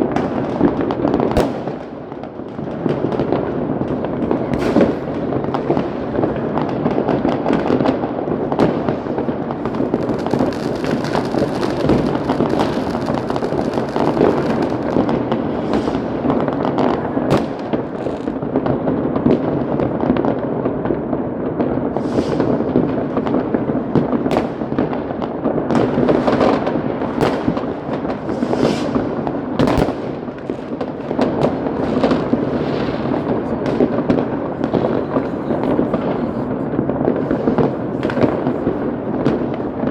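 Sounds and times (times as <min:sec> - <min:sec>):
firecrackers crackling: 0:00.0 - 0:39.9
loud firework bangs: 0:00.0 - 0:39.9
fireworks hissing: 0:08.9 - 0:18.4, 0:21.9 - 0:23.2, 0:28.2 - 0:33.5.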